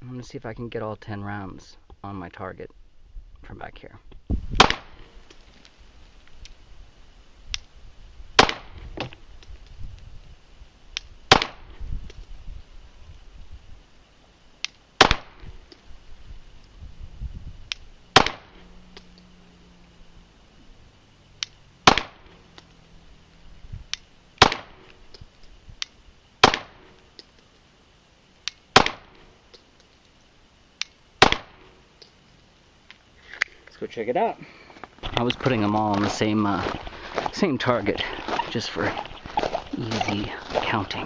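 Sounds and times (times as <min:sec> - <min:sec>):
pistol shots: 0:04.6 - 0:05.0, 0:08.4 - 0:08.7, 0:11.3 - 0:11.6, 0:15.0 - 0:15.4, 0:18.1 - 0:18.6, 0:21.8 - 0:22.4, 0:24.4 - 0:24.8, 0:26.4 - 0:26.9, 0:28.8 - 0:29.2, 0:31.2 - 0:31.6.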